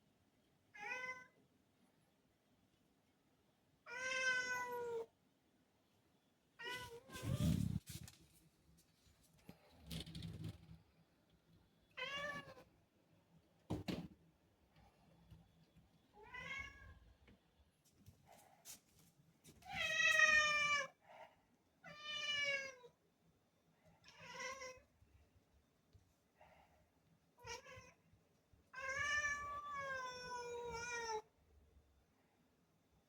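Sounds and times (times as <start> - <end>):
cat meowing: 3.9 - 5.1, 28.8 - 31.3.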